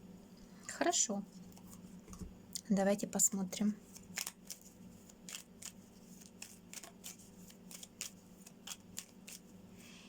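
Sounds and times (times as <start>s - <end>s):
cards being shuffled: 3.8s - 9.5s.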